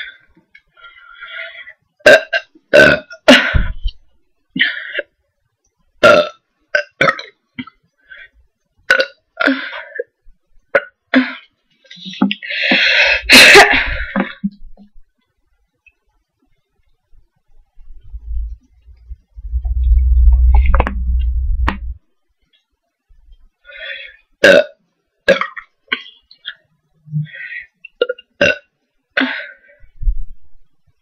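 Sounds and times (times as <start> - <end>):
woman burping loudly: 2.0 - 3.7, 6.0 - 7.7, 8.9 - 9.7, 13.3 - 14.4, 24.4 - 25.7, 28.0 - 29.4.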